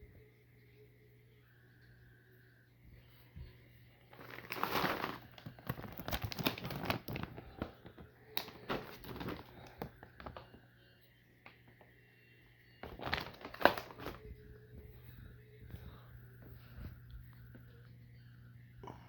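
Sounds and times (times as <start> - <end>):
dry material crinkling and rustling: 4.0 - 10.7, 12.8 - 17.9.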